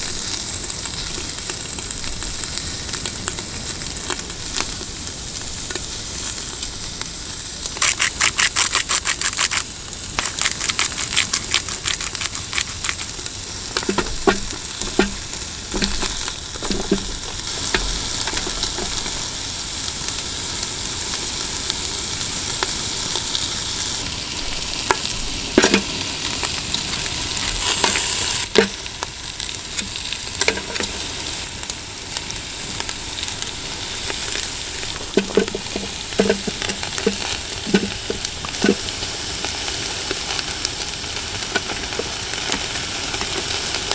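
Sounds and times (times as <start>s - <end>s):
food sizzling in a hot pan: 0.0s - 43.9s
utensil tapping against pan: 13.8s - 19.0s, 35.1s - 38.8s.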